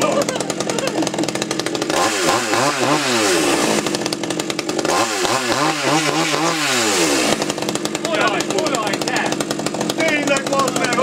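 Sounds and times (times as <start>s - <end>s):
chainsaw engine revving: 0.0s - 11.0s.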